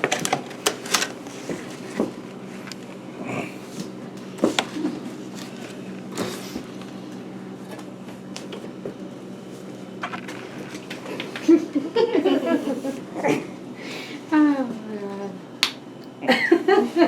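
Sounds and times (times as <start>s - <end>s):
food packaging being rummaged: 0.0s - 2.2s
steady low hum: 0.0s - 17.0s.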